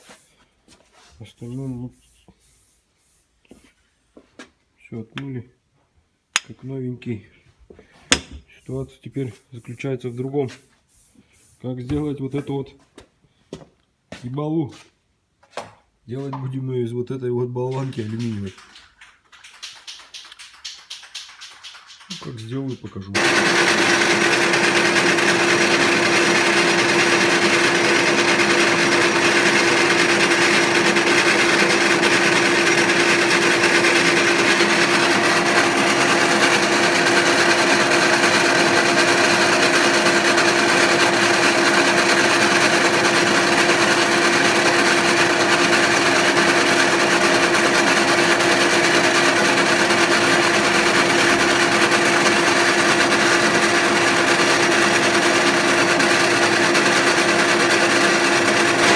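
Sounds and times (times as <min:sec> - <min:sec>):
lathe running with constant hum: 0:23.2 - 0:58.9.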